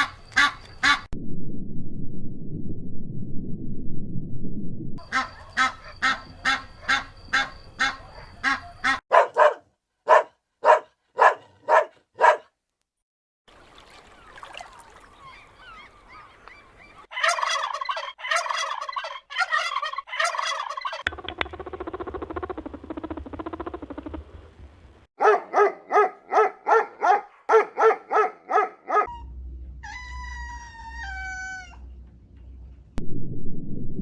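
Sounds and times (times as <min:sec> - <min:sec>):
fowl honking calls: 0:05.0 - 0:09.0, 0:15.3 - 0:21.1.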